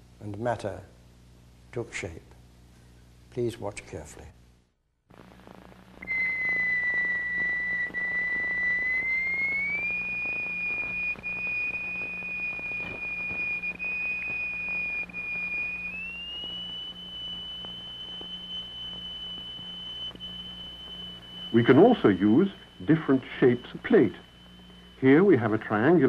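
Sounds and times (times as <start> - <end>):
low steady hum: 0.0 - 26.0
whistle-like pure tone: 6.0 - 26.0.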